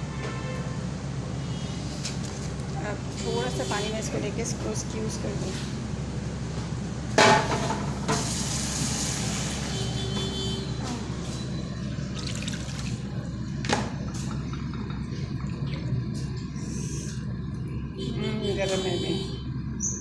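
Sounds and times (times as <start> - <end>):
water running into a vessel: 11.7 - 17.6.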